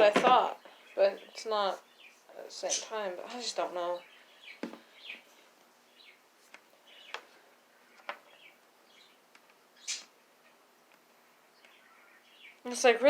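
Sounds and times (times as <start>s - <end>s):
faint bird chirps: 6.8s - 10.6s, 11.2s - 12.9s.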